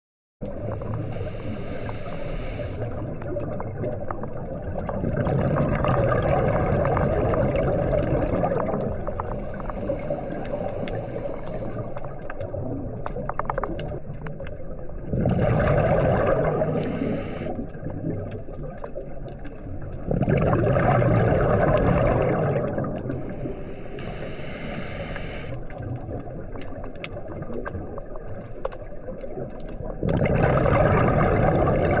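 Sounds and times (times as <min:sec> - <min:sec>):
exhaled bubbles gurgling: 0:00.4 - 0:32.0
regulator inhale hiss: 0:00.6 - 0:03.2, 0:09.0 - 0:12.2, 0:16.2 - 0:17.6, 0:23.0 - 0:25.7.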